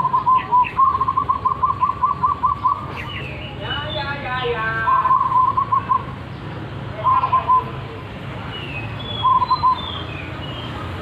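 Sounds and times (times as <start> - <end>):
dove cooing: 0.0 - 3.2, 4.9 - 6.1
faint high bird chirps: 0.0 - 4.2, 8.5 - 10.8.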